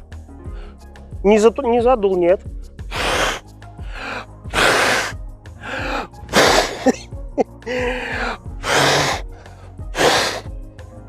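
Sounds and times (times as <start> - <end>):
background music: 0.0 - 11.0
man blowing hard: 2.9 - 7.0, 7.7 - 10.5.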